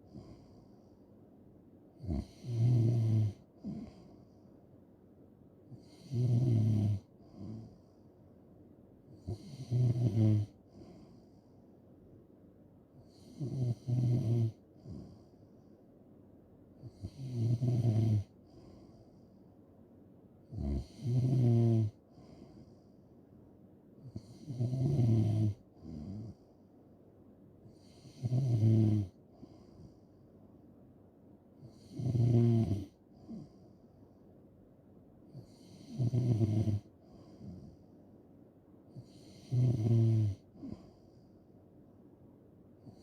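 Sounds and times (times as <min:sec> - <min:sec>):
person snoring: 0:02.0 - 0:04.1, 0:05.8 - 0:07.8, 0:09.2 - 0:10.9, 0:13.1 - 0:15.0, 0:17.0 - 0:18.3, 0:20.5 - 0:22.0, 0:24.1 - 0:26.4, 0:27.8 - 0:29.2, 0:31.7 - 0:33.5, 0:35.4 - 0:37.6, 0:39.0 - 0:40.9.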